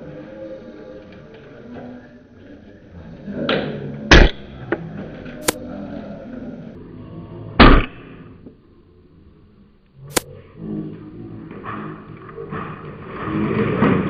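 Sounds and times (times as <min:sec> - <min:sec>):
airsoft rifle shots: 0:04.1 - 0:04.7, 0:07.6 - 0:08.2.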